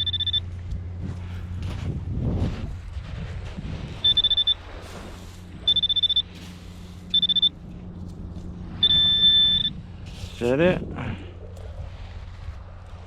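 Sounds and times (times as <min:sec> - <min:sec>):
metal detector beeping: 0:00.0 - 0:00.5, 0:04.0 - 0:04.6, 0:05.6 - 0:06.4, 0:07.1 - 0:07.6, 0:08.8 - 0:09.8.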